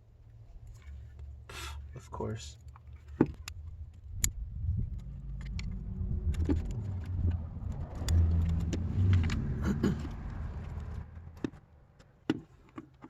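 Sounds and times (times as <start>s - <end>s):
low rumble: 3.4s - 11.5s.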